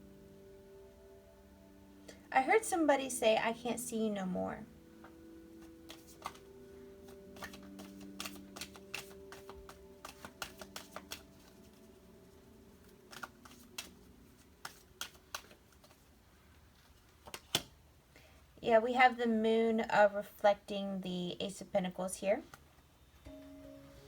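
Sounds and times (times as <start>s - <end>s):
cards clicking and tapping: 5.6s - 6.5s, 7.1s - 11.9s, 12.8s - 16.1s, 17.0s - 17.8s.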